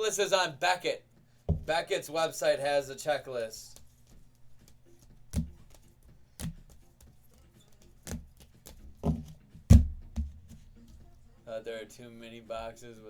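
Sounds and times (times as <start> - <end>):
cards knocked on tabletop: 1.5 - 1.7, 8.0 - 10.7
cards shuffling softly: 3.0 - 11.4.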